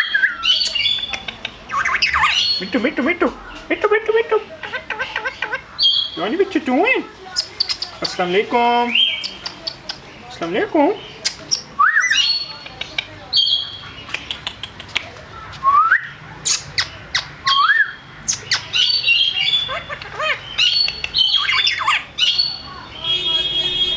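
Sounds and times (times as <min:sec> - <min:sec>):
parrot squawks: 0:00.0 - 0:02.7, 0:16.4 - 0:23.9
parrot clicks: 0:14.1 - 0:15.2, 0:19.9 - 0:21.5.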